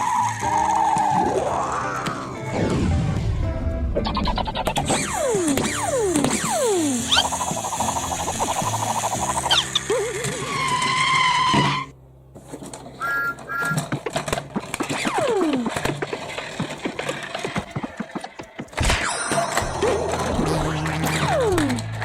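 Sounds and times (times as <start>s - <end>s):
wavering whistle-like tone: 13.0s - 13.8s
clicks and clatter: 13.6s - 22.0s.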